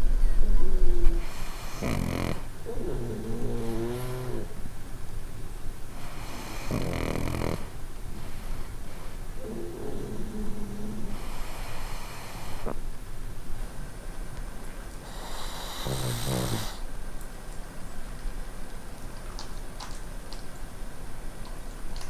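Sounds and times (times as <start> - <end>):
dog snoring: 0.6 - 4.6, 5.9 - 8.7, 9.4 - 12.8, 15.0 - 16.8.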